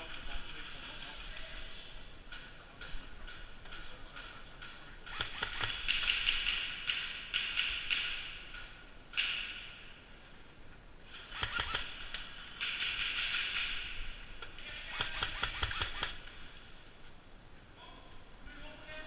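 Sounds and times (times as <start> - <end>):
airsoft guns firing bursts: 4.6 - 8.4, 11.1 - 16.5.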